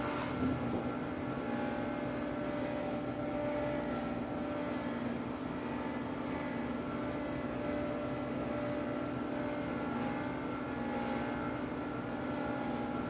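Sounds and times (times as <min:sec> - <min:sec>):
steady machine hum: 0:00.0 - 0:03.7.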